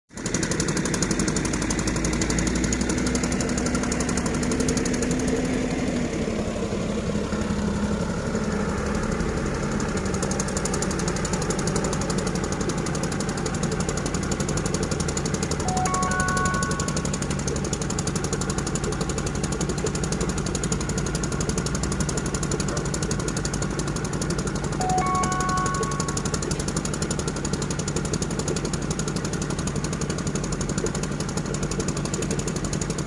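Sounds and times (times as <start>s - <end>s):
excavator diesel engine clattering: 7.2s - 33.0s.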